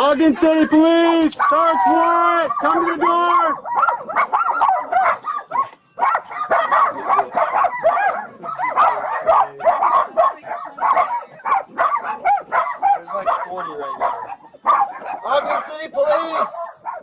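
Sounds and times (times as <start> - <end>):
small dogs barking and yapping: 0.0 - 17.0.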